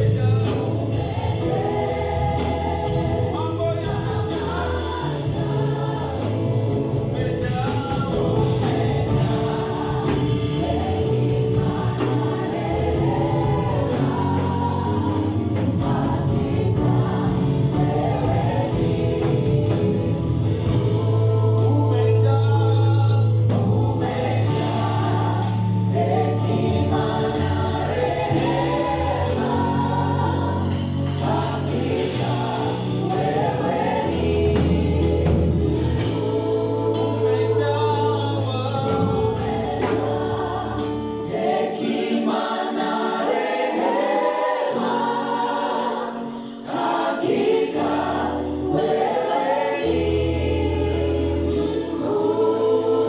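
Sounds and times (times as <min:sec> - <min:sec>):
band playing: 0:00.0 - 0:42.6
choir singing gospel song: 0:00.0 - 0:53.0.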